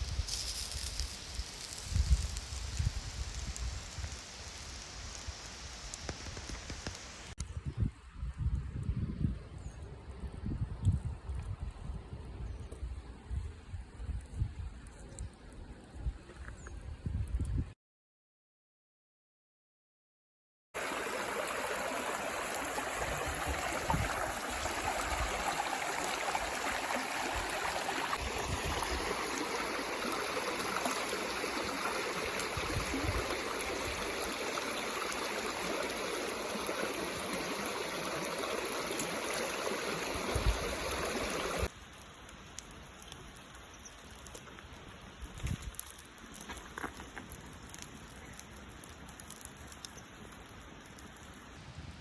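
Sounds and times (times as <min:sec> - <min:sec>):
river rushing over rocks: 0:20.8 - 0:41.7.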